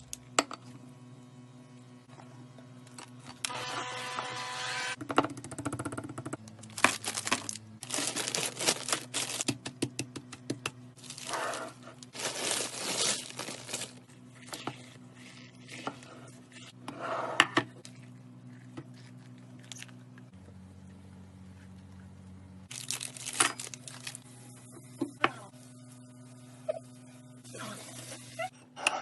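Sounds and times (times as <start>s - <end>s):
crinkly wrapping being torn: 6.6s - 9.5s, 12.1s - 14.0s, 22.7s - 24.2s.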